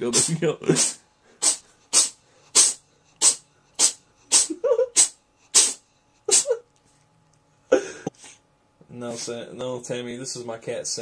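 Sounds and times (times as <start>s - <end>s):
cat sneezing: 0.1s - 6.6s.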